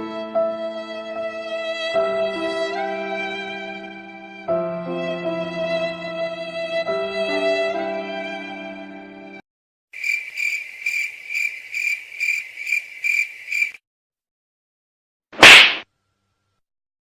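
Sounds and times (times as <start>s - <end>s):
loud short whoosh: 15.4s - 15.8s.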